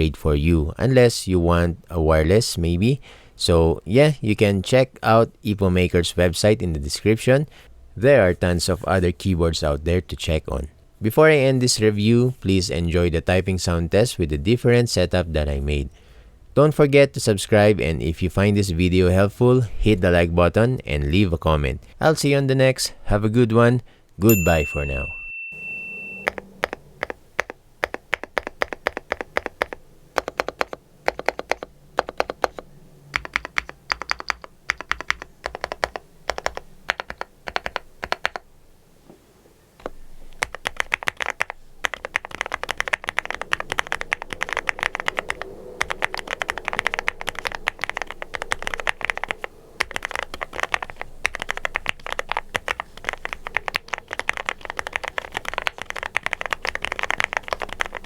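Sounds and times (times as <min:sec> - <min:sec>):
mechanical keyboard clacks: 0:26.2 - 0:38.5, 0:39.8 - 0:58.0.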